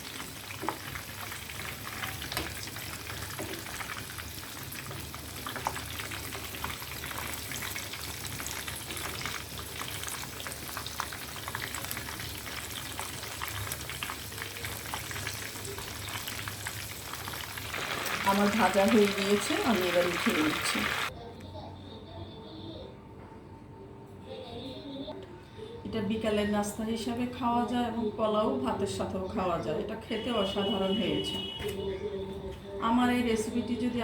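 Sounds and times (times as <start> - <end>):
food sizzling in hot oil: 0.0 - 21.1.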